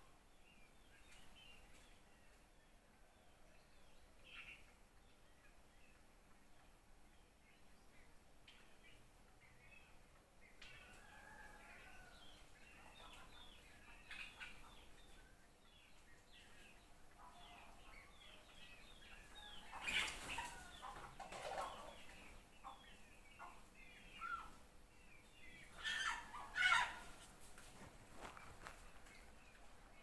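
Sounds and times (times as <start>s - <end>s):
birds chirping: 10.8s - 30.0s.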